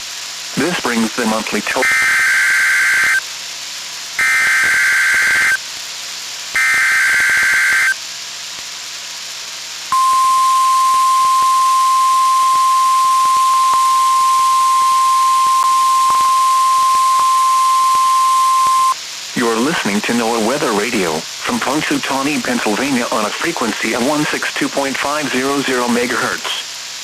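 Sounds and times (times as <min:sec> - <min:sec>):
warbling data bursts: 0:00.6 - 0:03.2, 0:04.2 - 0:05.6, 0:06.6 - 0:08.0, 0:09.9 - 0:20.2
steady warning alarm tone: 0:01.8 - 0:03.2, 0:04.2 - 0:05.6, 0:06.6 - 0:08.0, 0:09.9 - 0:19.0.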